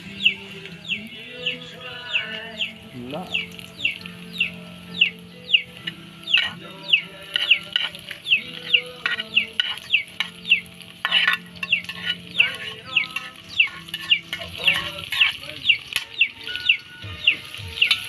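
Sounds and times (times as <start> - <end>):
chicks peeping: 0.0 - 18.0
food sizzling in oil: 0.0 - 18.0
spoon scraping a pot: 6.3 - 6.6, 7.2 - 16.7.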